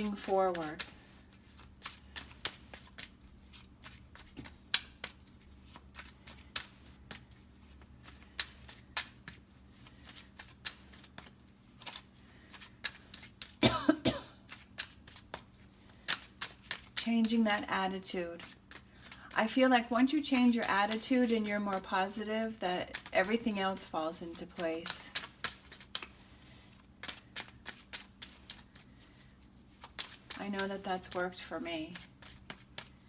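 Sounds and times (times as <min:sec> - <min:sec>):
cards being shuffled: 0:00.0 - 0:13.6, 0:14.4 - 0:33.0
person coughing: 0:13.6 - 0:14.4.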